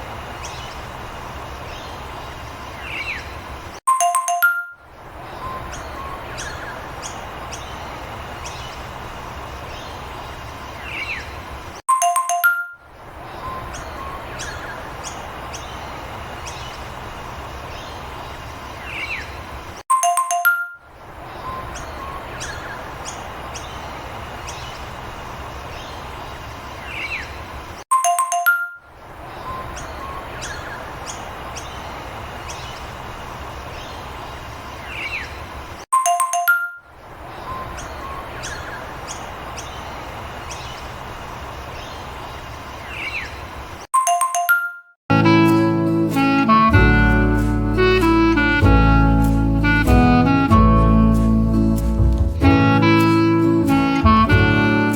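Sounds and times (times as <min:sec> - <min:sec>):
birds chirping: 0:00.0 - 0:54.9
ding-dong chime: 0:03.9 - 0:04.8, 0:11.9 - 0:12.8, 0:19.9 - 0:20.9, 0:27.9 - 0:28.9, 0:36.0 - 0:36.9, 0:44.0 - 0:45.0.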